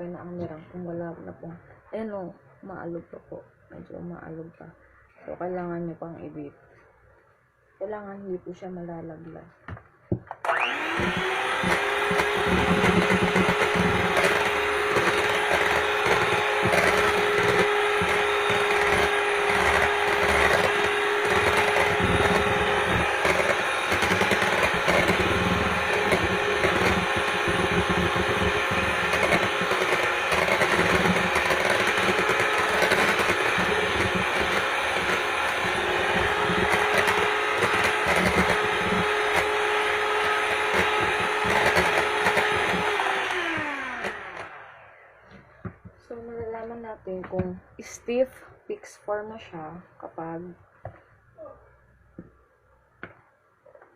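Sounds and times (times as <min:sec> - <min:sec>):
electric hand mixer whining: 0:10.3 - 0:45.9.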